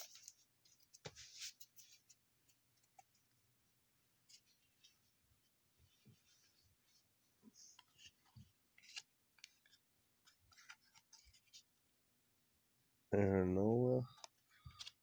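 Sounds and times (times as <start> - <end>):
trading cards rustling: 7.8 - 11.8, 14.1 - 15.0.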